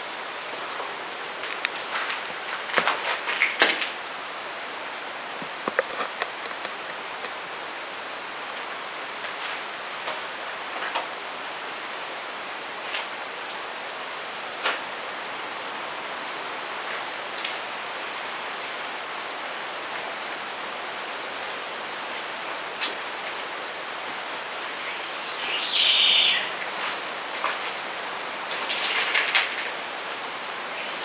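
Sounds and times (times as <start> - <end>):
steady hiss: 0.0 - 31.0.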